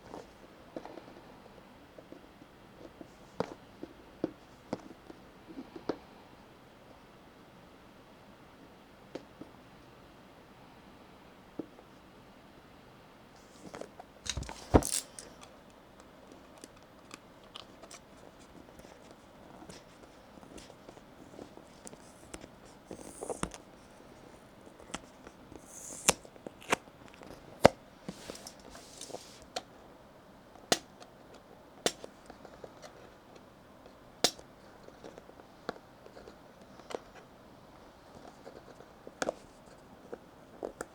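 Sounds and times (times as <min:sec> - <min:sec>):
mechanical keys clacking: 0:14.3 - 0:15.6.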